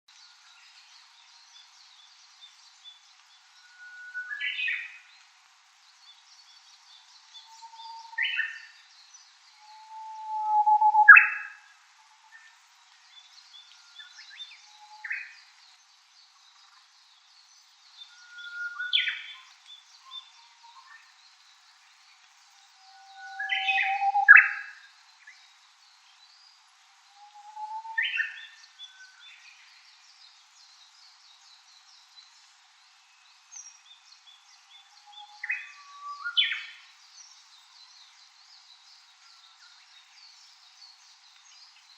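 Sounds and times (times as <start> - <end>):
bush warbler singing: 0.1 - 11.6, 13.0 - 41.9
faint high chirping: 6.5 - 12.6, 17.6 - 30.4.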